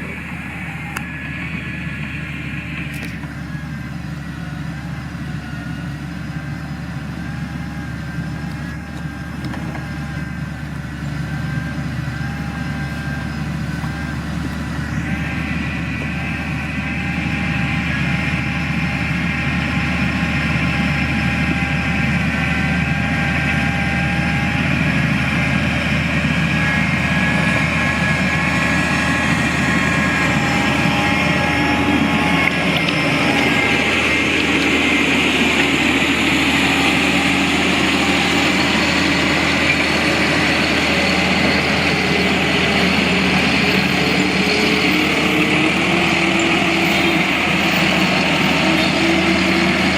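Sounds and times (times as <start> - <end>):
heavy machinery engine running: 0.0 - 49.9
high whine: 0.0 - 49.9.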